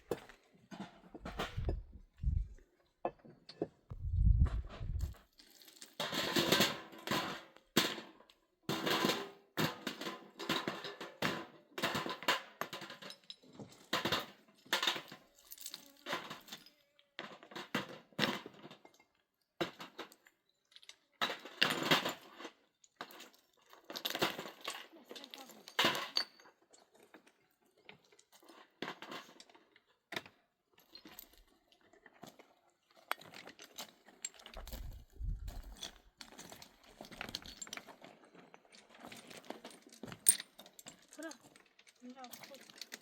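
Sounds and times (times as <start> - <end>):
rough scraping and clattering: 0.0 - 2.6, 33.1 - 43.0.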